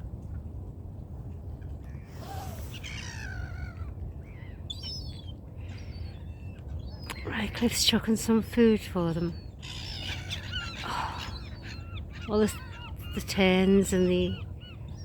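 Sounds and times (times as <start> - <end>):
waterbirds calling: 1.4 - 15.0.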